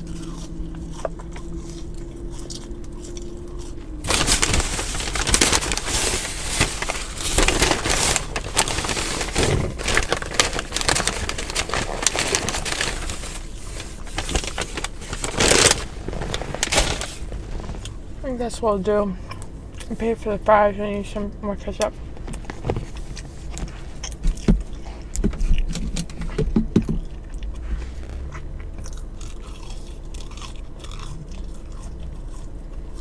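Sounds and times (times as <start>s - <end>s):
steady low hum: 0.0s - 33.0s
paper wrapper crinkling: 4.0s - 18.1s.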